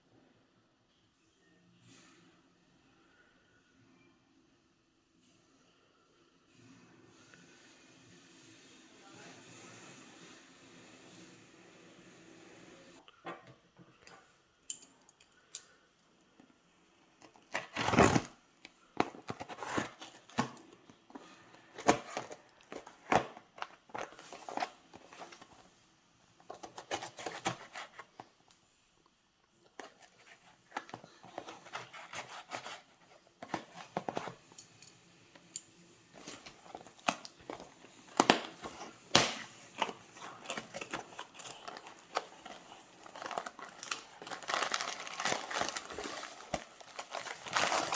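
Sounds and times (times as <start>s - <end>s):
plastic packaging crinkling and tearing: 36.2s - 47.9s.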